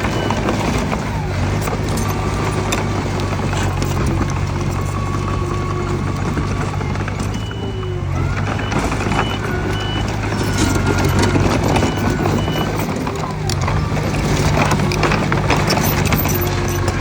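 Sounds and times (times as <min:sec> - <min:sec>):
bulldozer diesel engine running: 0:00.0 - 0:17.0
steel tracks clanking: 0:00.0 - 0:17.0
track squeals: 0:00.0 - 0:17.0
reversing alarm beeps: 0:04.7 - 0:14.6.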